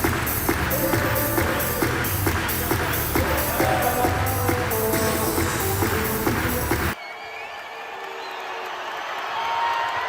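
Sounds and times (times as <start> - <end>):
electronic background music: 0.0 - 7.0
arena crowd noise: 0.0 - 10.0.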